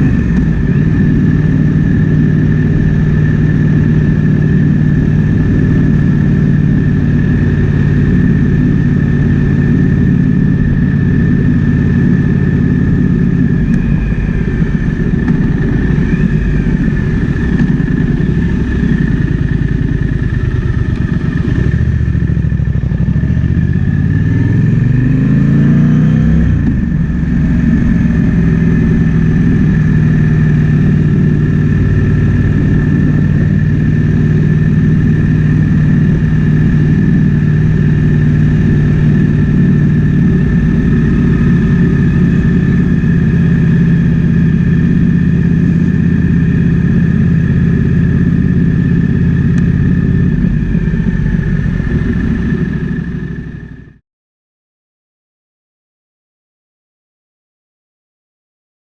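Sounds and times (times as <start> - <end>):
motorcycle engine running: 0.0 - 54.0.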